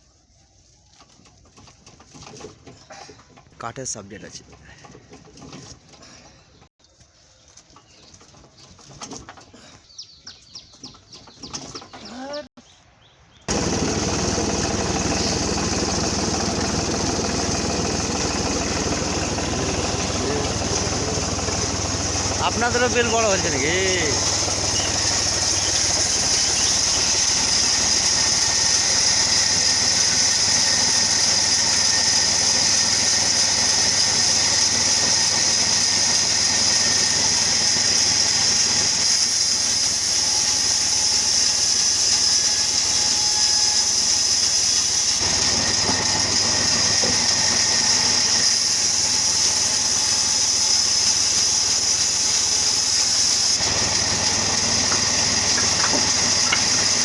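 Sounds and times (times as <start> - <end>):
sawmill machine droning: 13.5 - 57.0.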